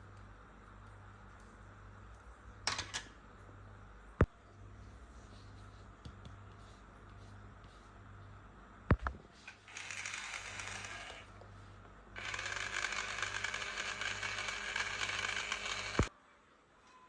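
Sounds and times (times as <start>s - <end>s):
toy drill motor whirring: 9.7s - 11.3s, 12.2s - 16.1s.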